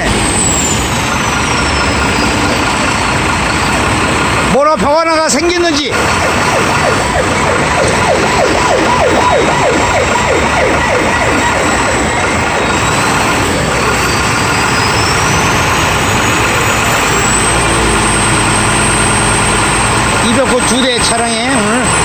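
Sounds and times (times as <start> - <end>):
truck engine revving: 0.0 - 22.0
thin rising whine: 6.0 - 22.0.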